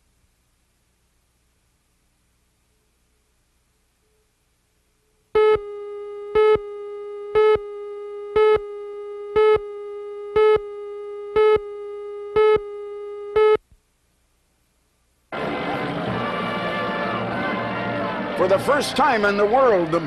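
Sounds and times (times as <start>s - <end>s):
harsh electronic beeps: 5.4s - 13.6s
steady electronic tone: 5.4s - 13.6s.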